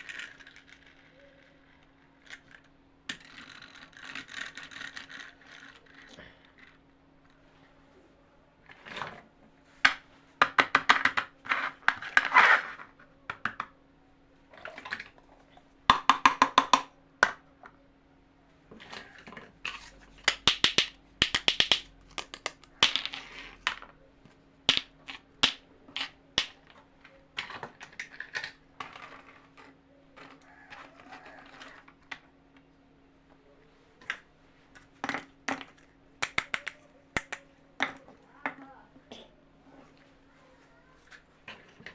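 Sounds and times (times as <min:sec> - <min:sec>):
plastic toy pieces clicking: 0:00.0 - 0:06.8, 0:19.7 - 0:23.9, 0:24.7 - 0:26.8, 0:35.0 - 0:38.0.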